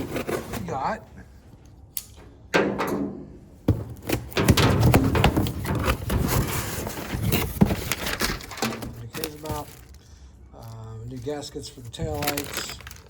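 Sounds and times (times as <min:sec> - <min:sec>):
parts clattering: 0:01.5 - 0:13.0
packaging rustling: 0:03.7 - 0:13.0.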